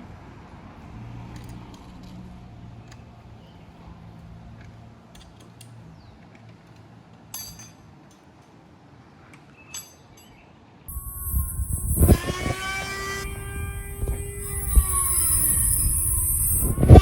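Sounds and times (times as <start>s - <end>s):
metallic clinks of hand tools: 7.3s - 7.8s, 9.7s - 12.0s
sharp ringing metal clink: 7.4s - 7.8s.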